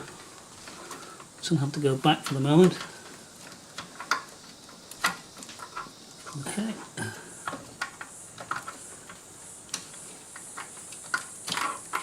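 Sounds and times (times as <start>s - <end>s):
steady high hiss: 0.0s - 12.0s.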